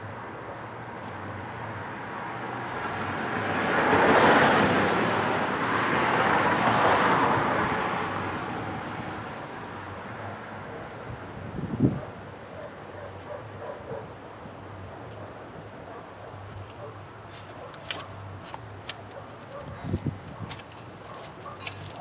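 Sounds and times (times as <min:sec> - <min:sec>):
vehicle passing by: 0:02.0 - 0:09.1.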